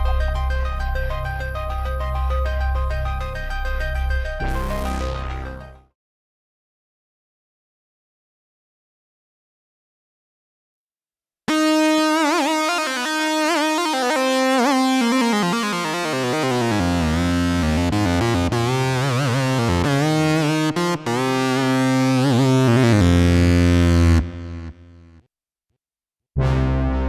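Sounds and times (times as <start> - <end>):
deep bass notes: 0.0 - 5.8, 16.6 - 25.2, 26.4 - 27.0
synthesizer notes and chords: 0.0 - 5.9, 11.5 - 25.2, 26.4 - 27.0.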